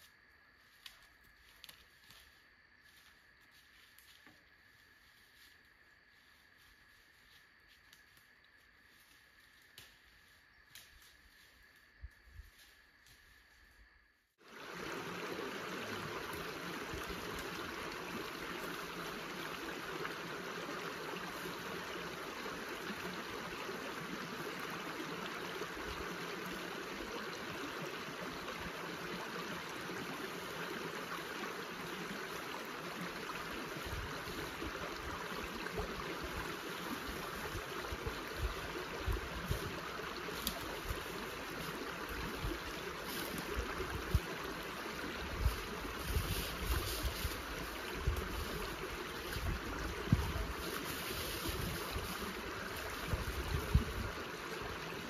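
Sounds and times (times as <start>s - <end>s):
running water rushing: 14.4s - 55.0s.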